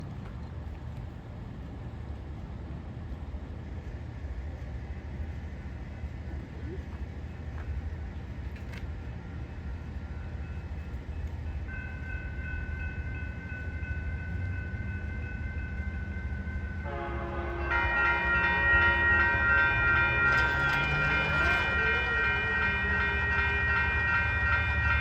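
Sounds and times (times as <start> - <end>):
locomotive rumble: 0.0 - 25.0
steady high tone: 12.1 - 25.0
locomotive air horn: 16.8 - 23.8.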